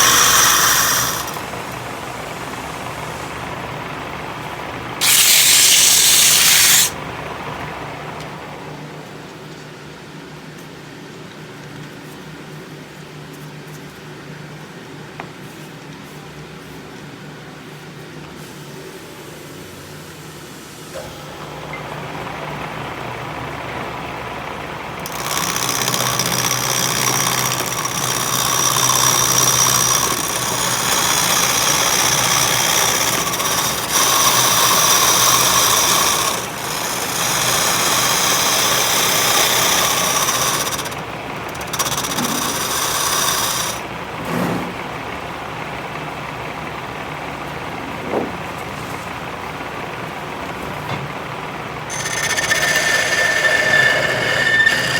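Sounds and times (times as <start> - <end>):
power tool grinding: 0.0 - 7.0, 20.9 - 44.9, 51.8 - 54.9.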